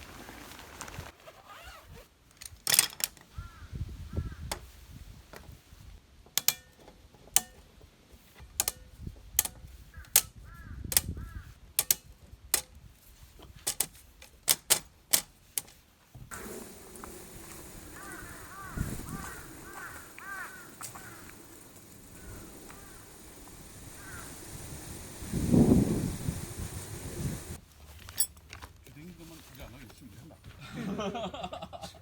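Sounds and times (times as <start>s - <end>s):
crow cawing: 3.4s - 4.5s, 10.0s - 11.5s, 17.8s - 24.6s
sharp clicks and knocks: 6.3s - 7.8s, 8.5s - 11.1s, 11.8s - 12.8s, 13.6s - 24.8s.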